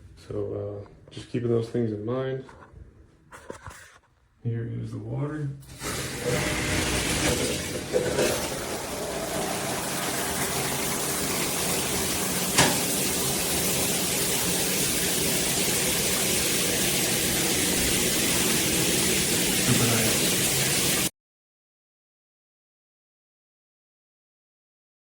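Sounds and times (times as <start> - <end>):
shower water pouring: 5.6 - 21.1.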